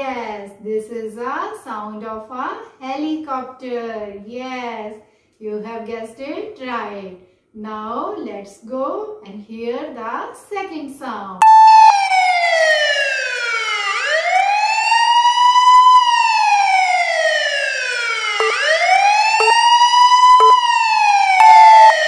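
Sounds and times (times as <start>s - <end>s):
brief steady tone: 11.4s - 12.1s, 18.4s - 18.6s, 19.4s - 19.6s, 20.4s - 20.6s, 21.4s - 22.0s
police siren wailing: 11.4s - 22.0s.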